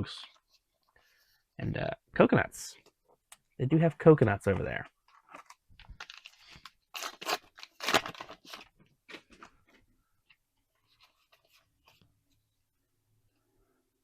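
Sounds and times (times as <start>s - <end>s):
card pack tearing open: 5.1s - 9.5s
foil wrapper crinkling: 5.2s - 9.3s.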